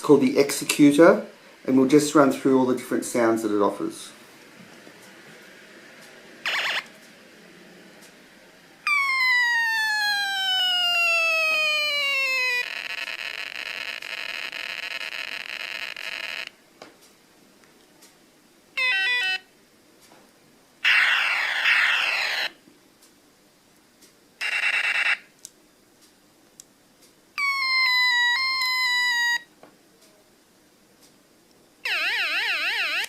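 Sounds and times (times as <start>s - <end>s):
fast warbling siren tone: 6.5s - 6.9s, 8.8s - 16.1s, 20.8s - 22.5s, 27.4s - 29.4s, 31.9s - 33.0s
noisy burst with falling sweeps: 8.8s - 13.4s
tone dropping in steps: 8.9s - 12.7s.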